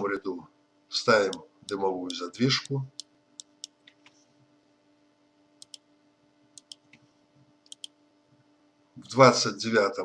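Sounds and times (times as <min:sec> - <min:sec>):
low steady hum: 0:00.0 - 0:10.0
computer mouse clicks: 0:05.6 - 0:05.8, 0:06.6 - 0:08.0.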